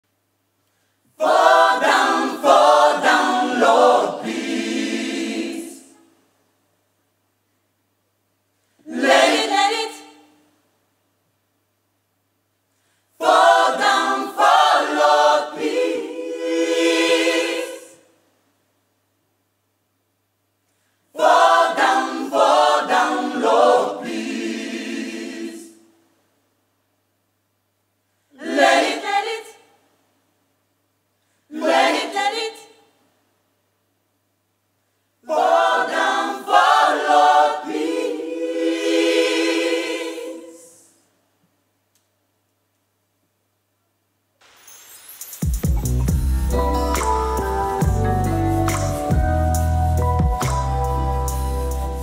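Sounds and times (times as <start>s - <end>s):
gospel choir singing: 1.1s - 6.2s, 8.8s - 10.4s, 13.1s - 18.2s, 21.1s - 26.0s, 28.3s - 29.7s, 31.4s - 32.8s, 35.2s - 41.1s, 46.4s - 52.0s.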